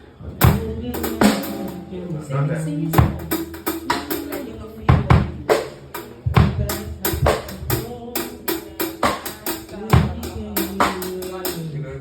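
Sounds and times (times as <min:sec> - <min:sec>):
held low instrument notes: 0:00.0 - 0:11.7
drum kit playing a groove: 0:00.4 - 0:11.8
bass drum hits: 0:06.3 - 0:08.1.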